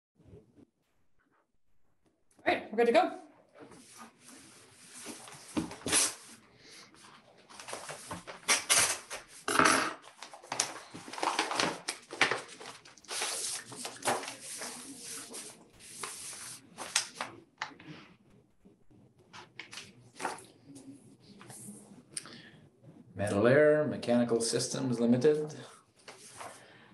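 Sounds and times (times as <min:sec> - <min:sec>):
paper rustling and tearing: 0:03.7 - 0:06.4, 0:07.1 - 0:17.7, 0:26.0 - 0:26.6.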